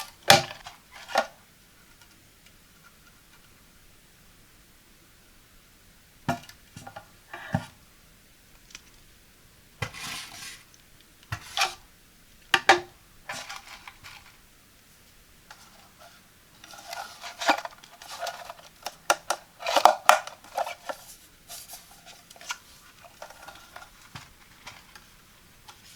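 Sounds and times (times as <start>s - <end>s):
toilet brush clattering in caddy: 22.3s - 25.0s.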